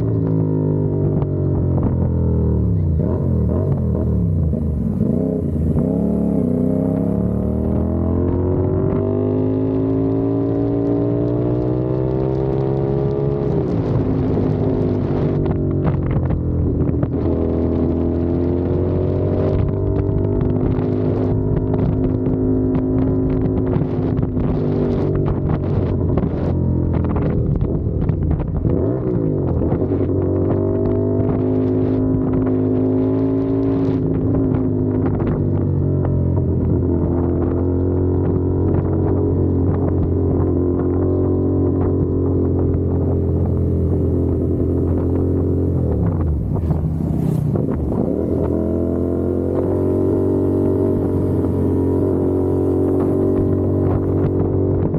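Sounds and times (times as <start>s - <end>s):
motorcycle engine revving: 0.0s - 54.9s
wind buffeting microphone: 12.0s - 54.9s.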